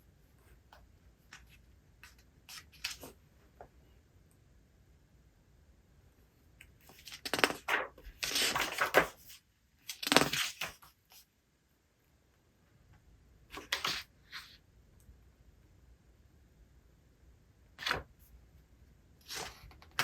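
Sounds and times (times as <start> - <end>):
book pages turning: 1.4 - 3.2, 6.8 - 10.9.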